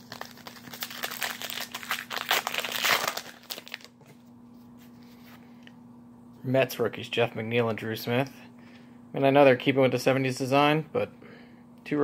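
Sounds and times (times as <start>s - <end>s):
wrapper crinkling: 0.0s - 4.1s.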